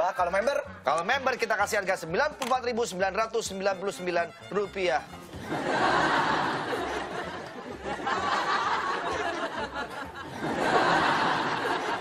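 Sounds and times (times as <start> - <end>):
group of people laughing: 5.4 - 12.0.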